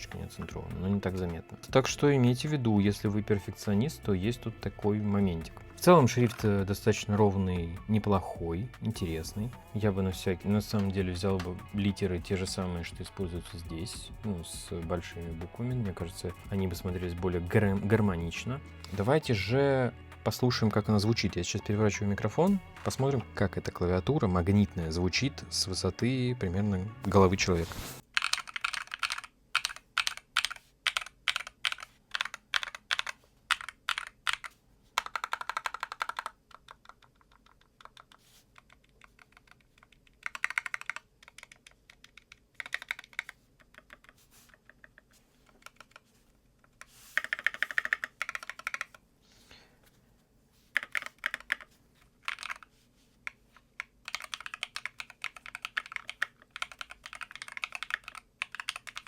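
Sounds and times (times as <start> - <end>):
keyboard typing: 9.0 - 18.1, 27.0 - 49.0, 50.7 - 52.7, 53.3 - 59.0.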